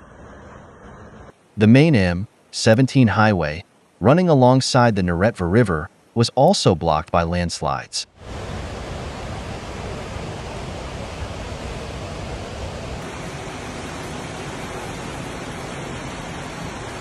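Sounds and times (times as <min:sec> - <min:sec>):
faint high steady tone: 0:00.0 - 0:08.0
floodwater rushing: 0:08.2 - 0:17.0.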